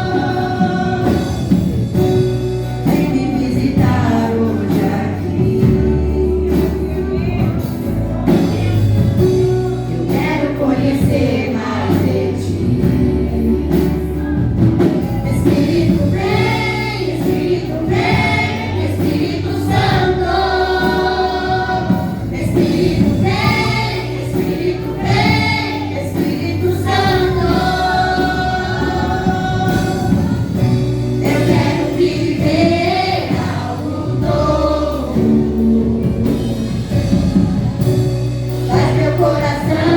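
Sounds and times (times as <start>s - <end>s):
group of voices singing: 0.0s - 39.9s
instrumental accompaniment: 0.0s - 39.9s.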